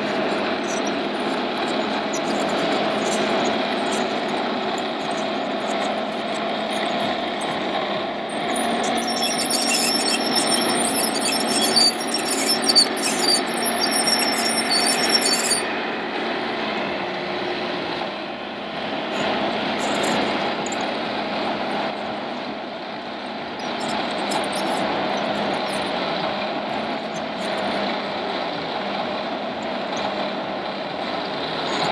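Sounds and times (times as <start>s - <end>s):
high-pitched flickering squeal: 0.0s - 16.0s, 23.6s - 26.0s.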